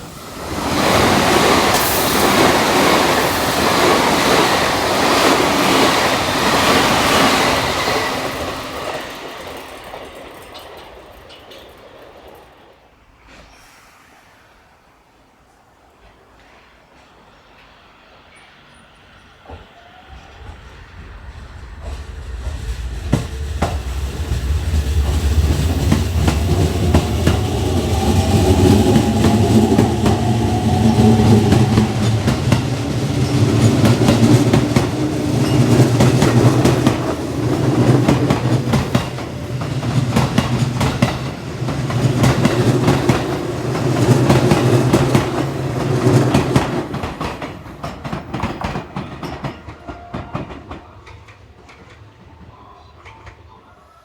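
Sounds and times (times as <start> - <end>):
electric train running: 0.0 - 50.5
wheels clacking over rail joints: 0.2 - 12.9, 19.4 - 53.7.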